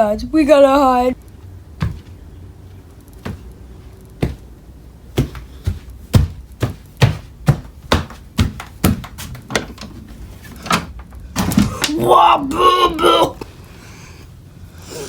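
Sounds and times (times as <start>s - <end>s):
dull knocks: 5.1s - 10.0s.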